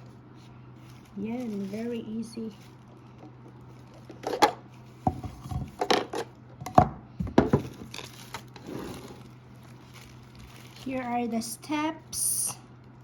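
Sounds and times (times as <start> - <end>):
plastic rubbing and rustling: 0.0 - 6.4, 7.5 - 11.5.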